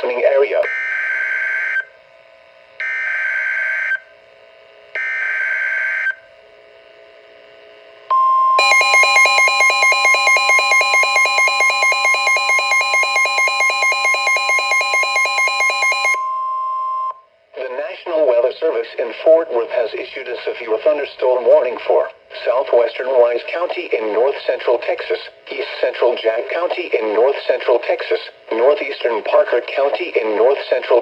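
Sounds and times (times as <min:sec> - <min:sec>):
steady alarm tone: 0:08.6 - 0:16.5
rapidly pulsing beep: 0:08.6 - 0:17.1.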